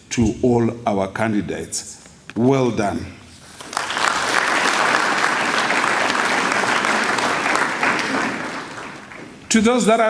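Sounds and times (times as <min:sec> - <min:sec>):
audience applauding: 0:03.5 - 0:09.5.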